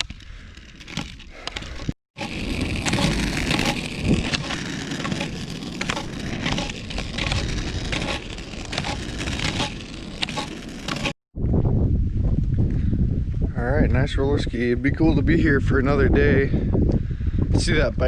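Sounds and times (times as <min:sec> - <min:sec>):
roller skis rolling on road: 0:00.0 - 0:11.2.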